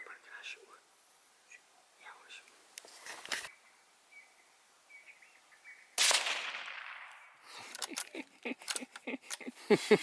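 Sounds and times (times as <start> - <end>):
faint bird chirps: 3.4 - 6.0
gunshot: 6.0 - 7.4.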